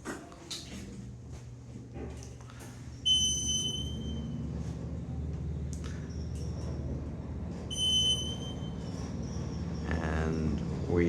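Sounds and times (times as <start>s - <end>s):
elevator low hum: 0.7s - 11.0s
high electronic beep: 7.7s - 8.7s.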